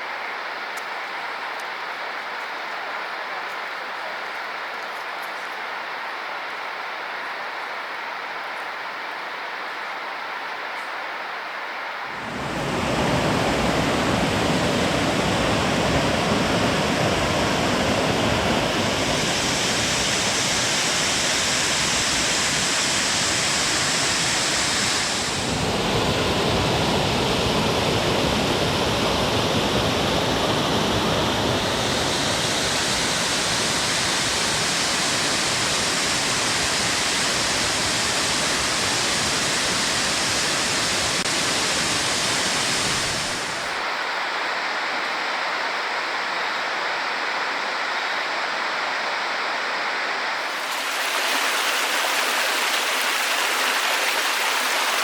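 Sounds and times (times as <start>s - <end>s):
waterfall rushing: 12.0s - 55.0s.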